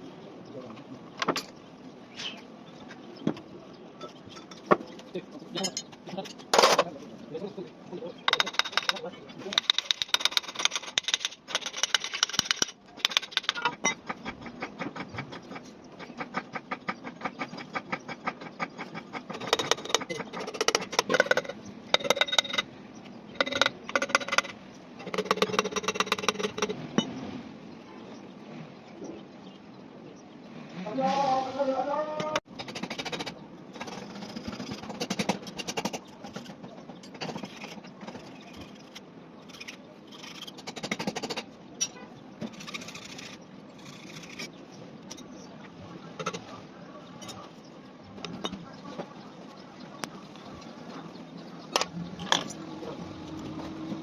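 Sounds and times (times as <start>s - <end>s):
rapid metallic clicking: 8.3s - 22.7s.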